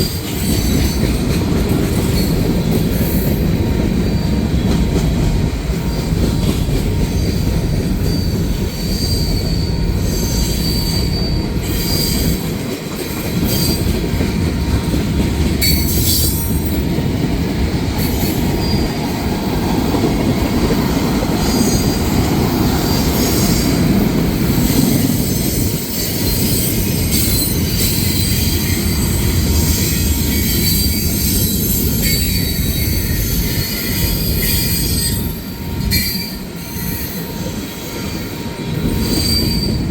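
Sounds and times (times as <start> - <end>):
freight train rumbling on rails: 0.0 - 39.9
high-pitched wheel squeal: 8.1 - 12.4, 25.2 - 39.9.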